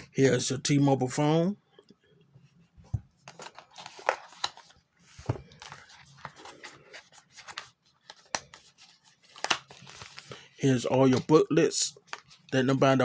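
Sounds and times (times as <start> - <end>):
paper and packaging rustling: 3.2 - 11.4, 12.0 - 12.6.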